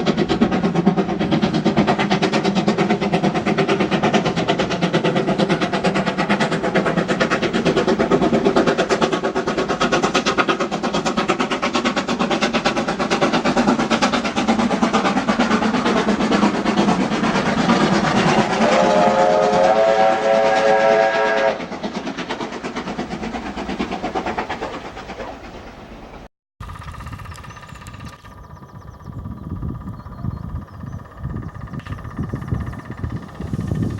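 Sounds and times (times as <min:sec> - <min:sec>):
steam locomotive exhaust chuffs: 0:00.0 - 0:33.9
steam whistle chord: 0:18.6 - 0:21.6.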